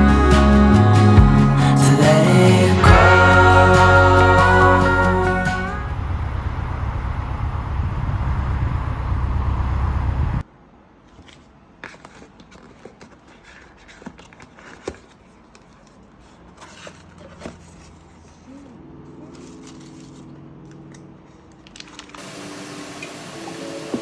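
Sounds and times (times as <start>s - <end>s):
pop music with heavy bass: 0.0s - 5.9s.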